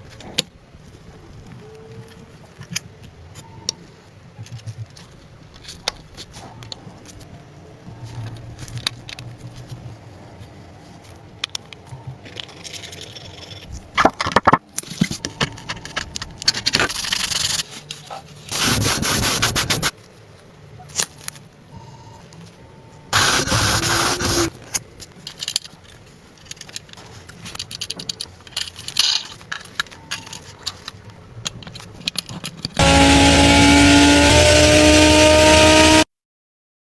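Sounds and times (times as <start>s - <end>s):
rubbing and scraping on car body: 16.5s - 20.0s, 23.2s - 24.8s
sanding noise: 16.9s - 20.0s, 23.2s - 24.6s.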